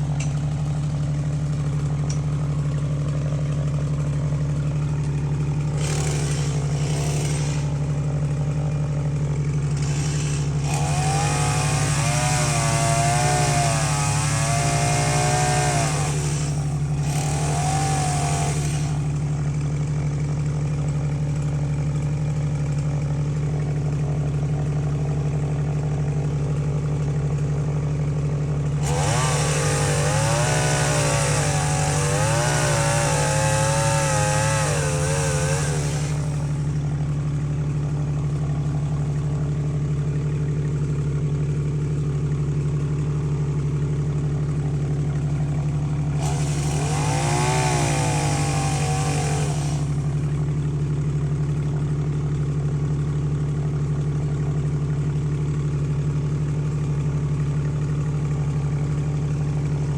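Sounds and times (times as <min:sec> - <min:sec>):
chainsaw revving into wood: 0:00.0 - 0:08.8, 0:09.4 - 0:20.5, 0:28.7 - 0:37.0, 0:45.1 - 0:50.5
chainsaw idling: 0:00.0 - 0:59.9.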